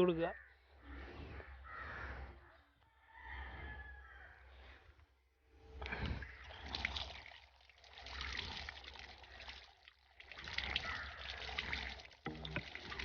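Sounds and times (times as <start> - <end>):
water trickling and splashing: 5.8 - 13.0.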